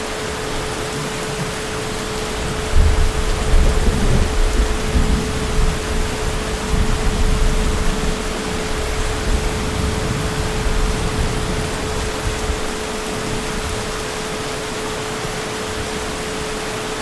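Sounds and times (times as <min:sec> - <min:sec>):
heavy rain hissing: 0:00.0 - 0:17.0
distant thunder rumble: 0:02.4 - 0:14.0.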